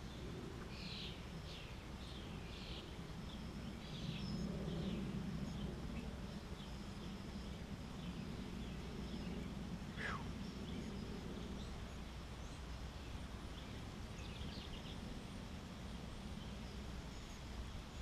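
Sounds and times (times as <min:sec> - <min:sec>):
steady low rumble: 0:00.0 - 0:18.0
bird falling call: 0:10.0 - 0:10.3
short bird chirps: 0:10.0 - 0:10.3.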